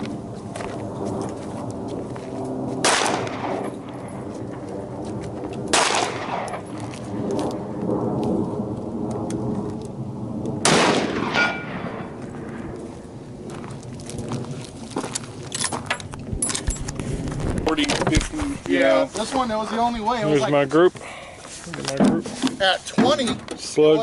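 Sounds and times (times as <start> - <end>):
shotgun shots with echo: 2.8 - 3.7, 5.7 - 6.6, 10.6 - 12.1.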